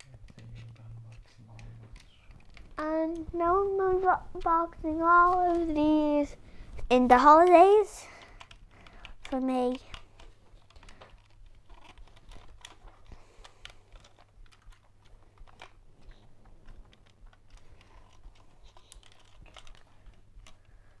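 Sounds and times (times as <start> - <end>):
low electrical hum: 0.0 - 21.0
small objects clicking and tapping: 7.2 - 21.0.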